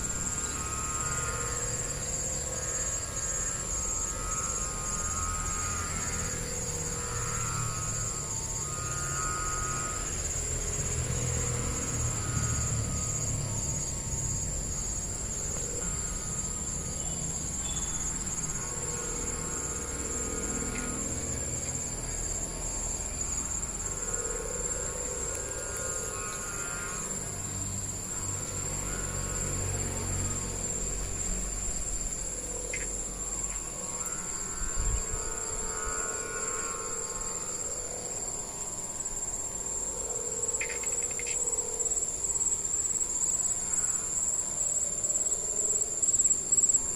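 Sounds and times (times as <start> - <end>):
high pulsing insect trill: 0.0 - 46.9
wavering humming kite tones: 0.0 - 46.9
wind rumble on microphone: 34.4 - 35.8.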